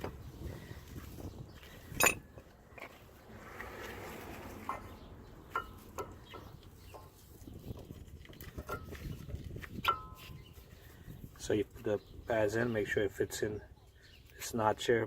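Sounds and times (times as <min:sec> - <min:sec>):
light metallic clinks: 0:01.9 - 0:02.3
scraping rustle: 0:02.8 - 0:05.1.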